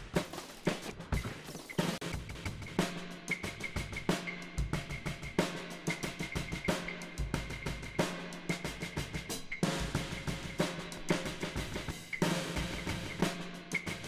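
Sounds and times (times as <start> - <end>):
electronic drums with delay echoes: 0.0 - 14.0.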